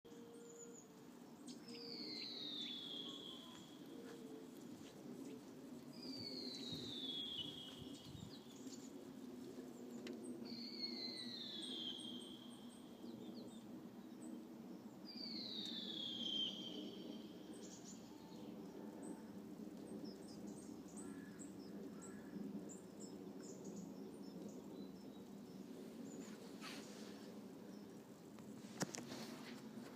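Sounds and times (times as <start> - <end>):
faint high chirps: 0.1 - 4.6.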